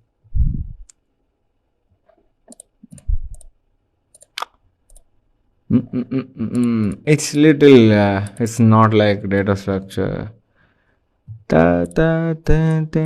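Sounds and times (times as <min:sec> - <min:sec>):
low thumps: 0:00.3 - 0:00.9
computer mouse clicking: 0:02.4 - 0:05.1.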